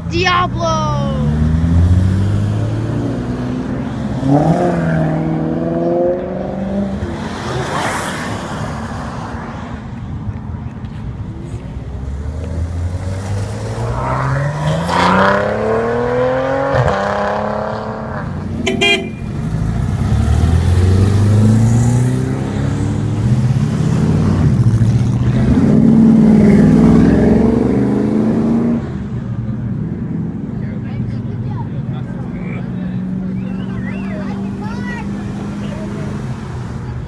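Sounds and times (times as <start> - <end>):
car engine accelerating: 12.0 - 37.0
short horn toot: 18.6 - 19.3.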